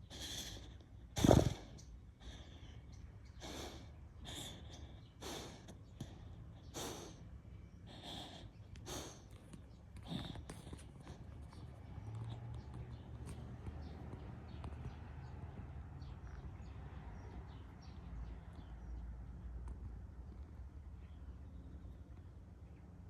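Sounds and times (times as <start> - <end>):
dog snoring: 0.0 - 1.8, 7.9 - 12.5
faint birds chirping: 0.0 - 23.0.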